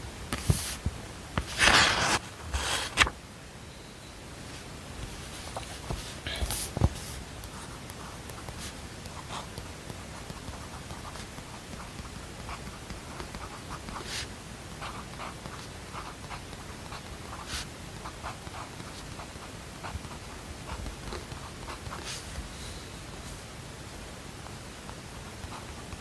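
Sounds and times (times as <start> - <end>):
white noise hiss: 0.0 - 26.0
pen scratching on paper: 1.5 - 3.0, 5.5 - 22.3.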